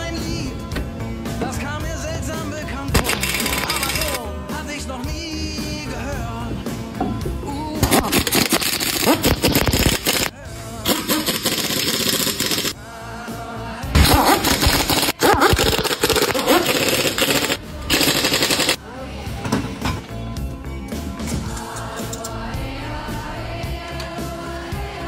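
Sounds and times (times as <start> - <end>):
song playing in background: 0.0 - 25.0
rapid mechanical rattling: 2.9 - 4.2, 7.8 - 10.3, 10.9 - 12.8, 14.0 - 18.8.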